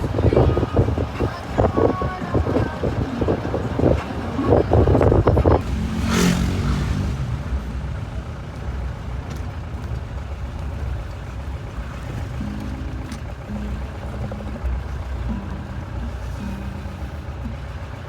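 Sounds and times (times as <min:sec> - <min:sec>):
vehicle engine rumbling: 0:00.0 - 0:18.0
voices: 0:00.0 - 0:18.0.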